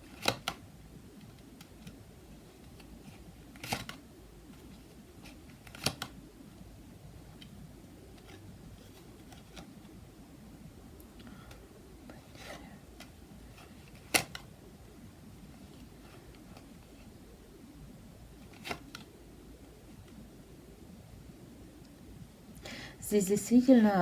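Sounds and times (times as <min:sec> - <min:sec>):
faint room hiss: 0:00.0 - 0:24.0
cards snapping on a table: 0:00.1 - 0:00.6.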